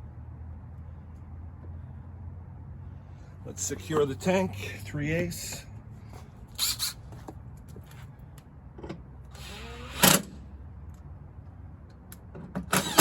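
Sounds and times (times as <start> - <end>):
impact driver running in bursts: 12.8 - 13.0.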